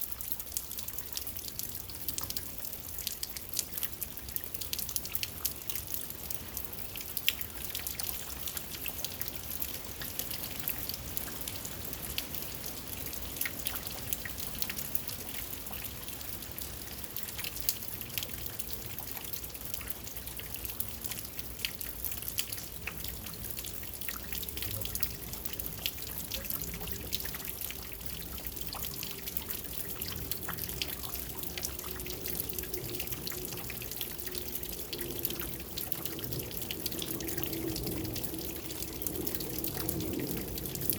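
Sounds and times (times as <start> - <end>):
raindrops ticking and dripping: 0.0 - 40.9.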